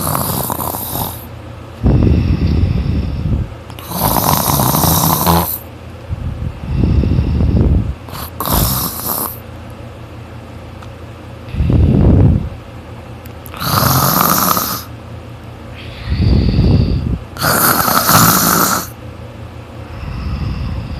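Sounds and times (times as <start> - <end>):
person snoring loudly: 0.0 - 1.3, 2.0 - 5.7, 6.7 - 9.4, 13.5 - 14.9, 15.8 - 19.0
hissing breath: 15.7 - 17.6.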